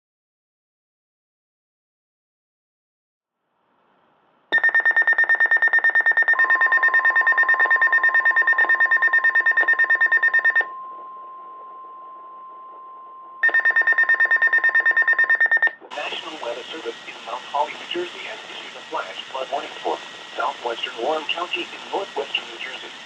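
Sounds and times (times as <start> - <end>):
rapid alarm beeping: 4.6 - 23.0
steady alert tone: 8.7 - 22.7.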